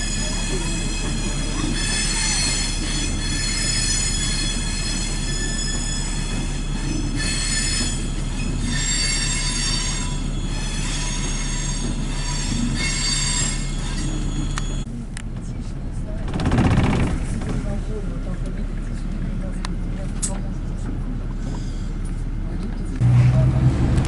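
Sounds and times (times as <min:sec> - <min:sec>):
electric train rumbling: 0:00.0 - 0:24.0.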